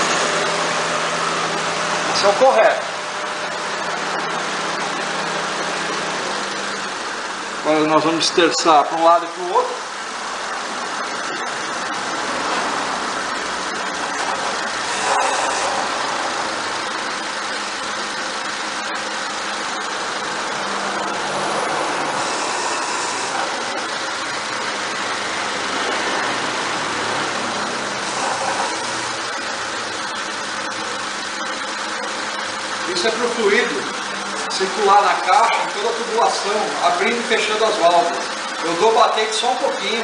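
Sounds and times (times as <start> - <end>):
car engine idling: 0.0 - 40.0
power steering hiss: 22.1 - 23.6.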